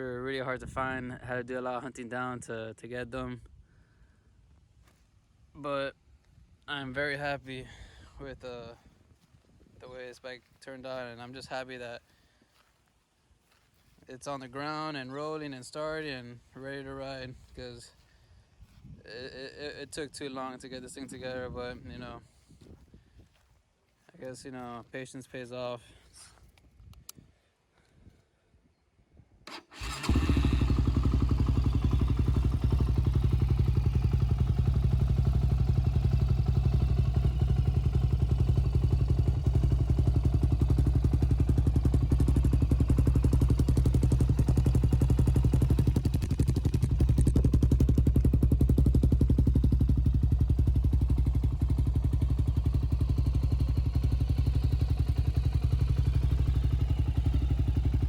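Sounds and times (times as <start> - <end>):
engine idling: 29.7 - 58.0.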